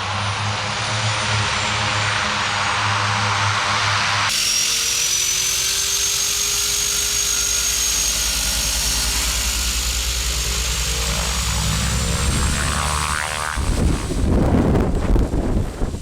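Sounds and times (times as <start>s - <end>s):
high whine rising in pitch: 0.0s - 16.0s
propeller plane engine throbbing: 0.0s - 16.0s.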